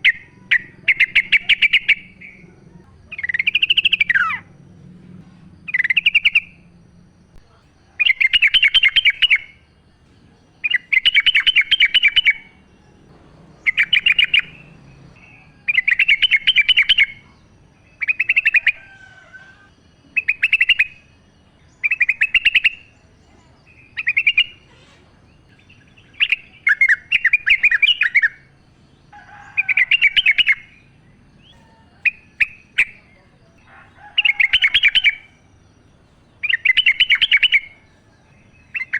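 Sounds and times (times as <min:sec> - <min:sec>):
bird singing bubbly chattering phrases: 0:00.0 - 0:04.5, 0:08.0 - 0:09.8, 0:10.5 - 0:12.6, 0:13.6 - 0:18.8, 0:20.0 - 0:28.6, 0:29.6 - 0:33.6, 0:34.2 - 0:38.9.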